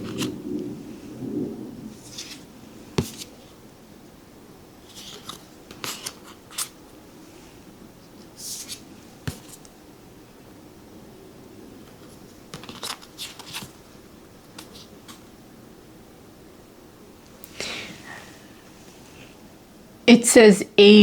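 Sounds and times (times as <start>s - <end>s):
cards sliding swishes: 2.0s - 3.4s, 4.9s - 6.8s, 8.3s - 9.7s, 12.6s - 13.8s.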